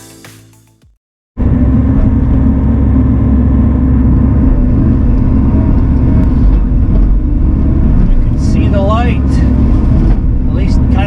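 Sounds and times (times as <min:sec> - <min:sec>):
background music: 0:00.0 - 0:00.9
heavy diesel engine: 0:01.4 - 0:11.0.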